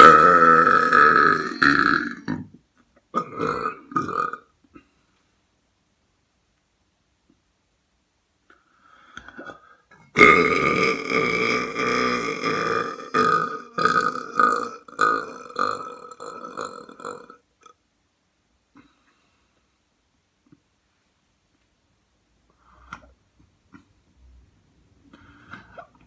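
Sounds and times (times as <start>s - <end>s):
person belching: 0.0s - 4.5s, 9.3s - 17.8s.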